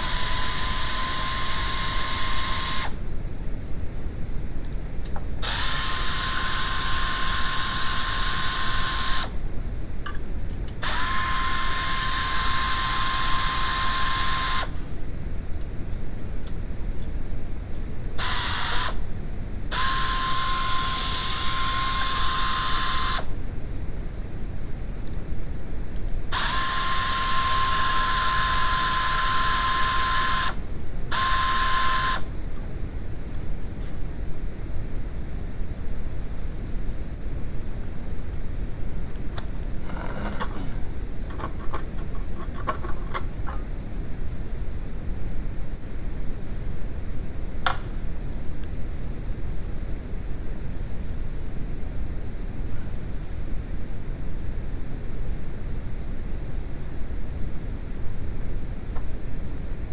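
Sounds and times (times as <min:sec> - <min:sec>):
power drill motor whining: 0:00.0 - 0:03.0, 0:05.4 - 0:09.4, 0:10.8 - 0:14.7, 0:18.2 - 0:19.0, 0:19.7 - 0:23.3, 0:26.4 - 0:32.3.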